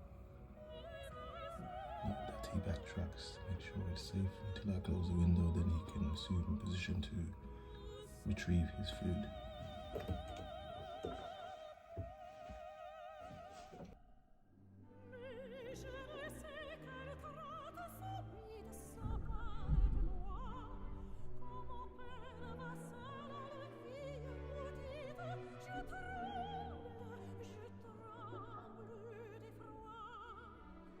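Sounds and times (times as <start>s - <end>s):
operatic singing: 0.0s - 14.0s.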